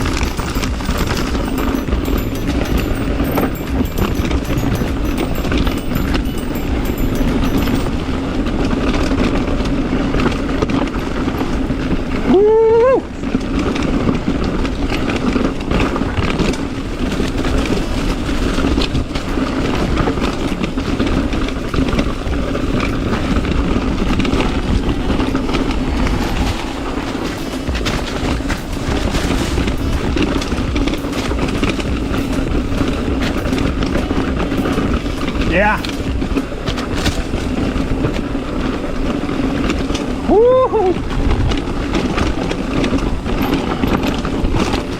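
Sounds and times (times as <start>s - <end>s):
bike rattling over rocks: 0.0s - 44.9s.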